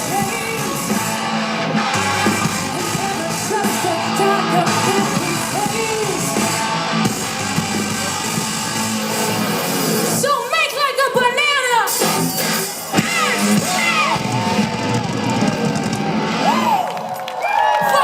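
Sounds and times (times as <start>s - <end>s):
distorted electric guitar: 0.0s - 10.2s, 11.9s - 16.8s
heavy drum beat: 0.0s - 10.2s, 12.9s - 16.4s
person singing: 2.6s - 6.7s.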